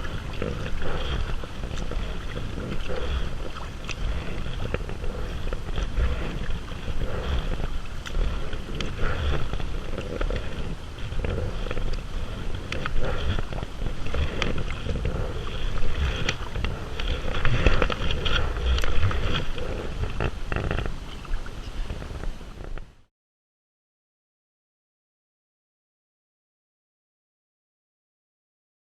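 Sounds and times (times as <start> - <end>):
water splashing: 0.0 - 22.8
wind on microphone: 0.0 - 23.1.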